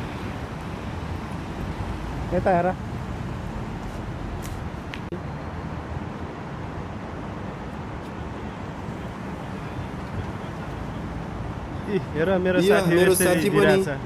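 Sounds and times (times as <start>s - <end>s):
outdoor city background noise: 0.0s - 14.0s.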